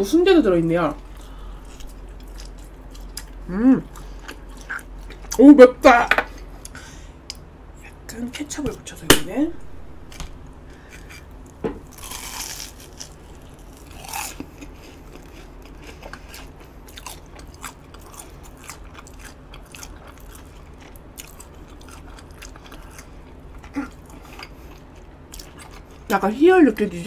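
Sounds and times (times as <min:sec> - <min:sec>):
wet chewing: 0:01.0 - 0:05.4, 0:11.9 - 0:26.1.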